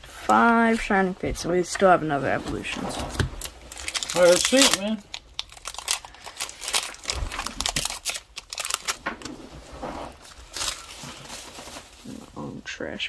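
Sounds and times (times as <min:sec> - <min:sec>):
wrapper crinkling: 0:02.6 - 0:12.4
cardboard and foil clicks: 0:03.2 - 0:09.3.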